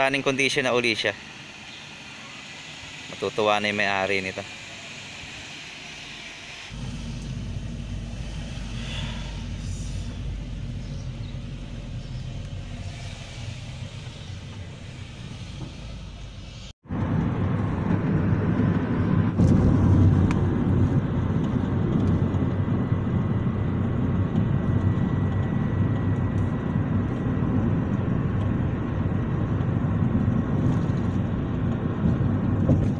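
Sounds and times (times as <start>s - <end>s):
car engine idling: 6.7s - 16.6s.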